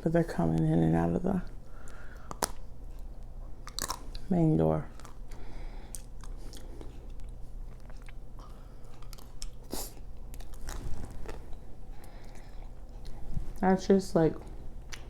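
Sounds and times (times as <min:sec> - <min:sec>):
steady low hum: 0:00.0 - 0:15.0
chewing ice cream bar: 0:01.4 - 0:13.7, 0:14.4 - 0:15.0
chocolate shell crunching: 0:01.8 - 0:04.3.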